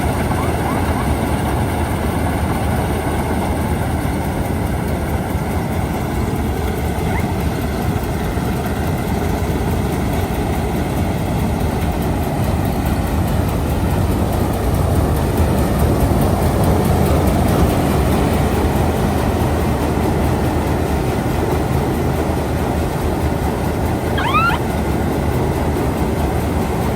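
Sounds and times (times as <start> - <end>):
high rising chirp: 0.0 - 1.1, 24.2 - 24.6
combine harvester rumbling: 0.0 - 26.9.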